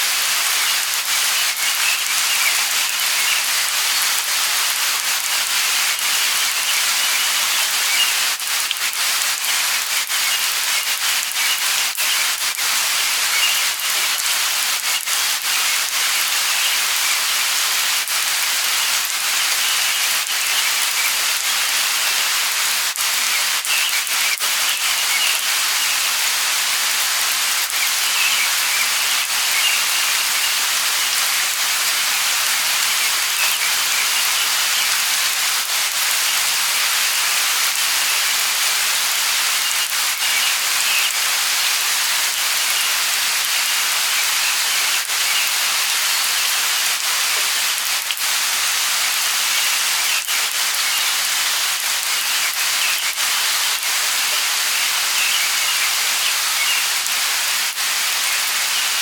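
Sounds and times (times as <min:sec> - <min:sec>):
light rain falling: 0:00.0 - 0:59.0.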